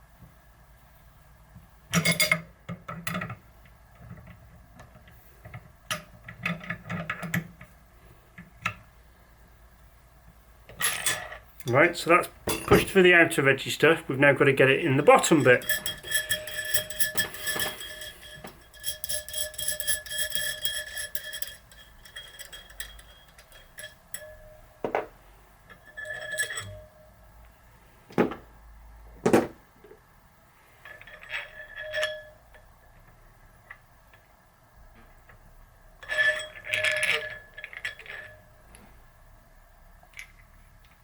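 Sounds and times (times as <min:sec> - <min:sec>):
metal clinking and ticking: 0:15.0 - 0:25.0, 0:25.6 - 0:27.2.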